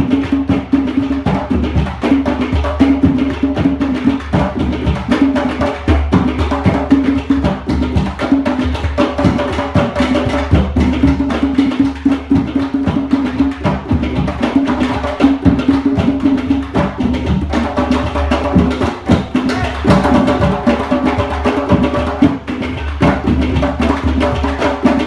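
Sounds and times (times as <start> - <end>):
rapid hand percussion: 0.0 - 25.0
steady held tones: 13.8 - 24.8.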